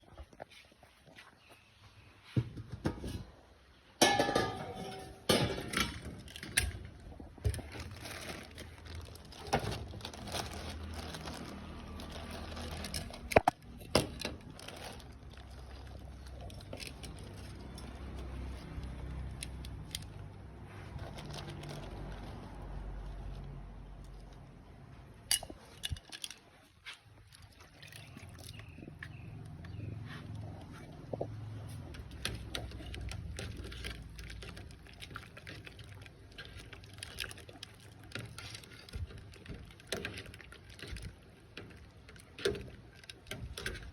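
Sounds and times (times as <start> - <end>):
dishes and utensils clinking: 4.0 - 6.1.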